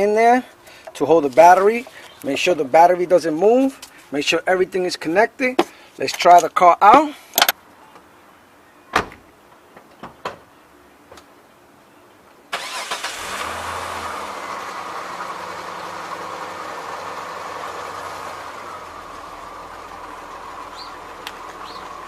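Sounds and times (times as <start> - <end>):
car engine starting and idling: 12.5 - 22.0.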